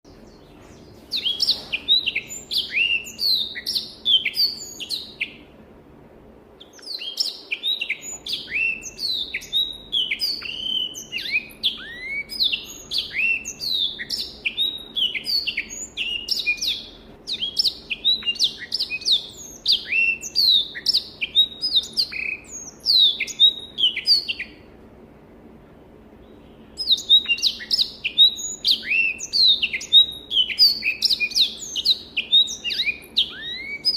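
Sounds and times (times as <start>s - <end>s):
canary singing: 0.0s - 5.6s, 6.5s - 24.8s, 26.2s - 33.9s
faint steady hum: 0.0s - 33.9s.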